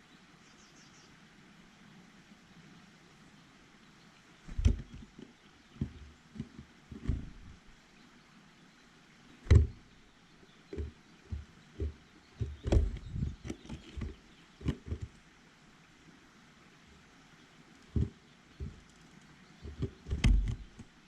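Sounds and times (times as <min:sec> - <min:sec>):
birds pecking on a feeder: 0:04.4 - 0:07.8, 0:09.3 - 0:15.4, 0:16.8 - 0:21.0.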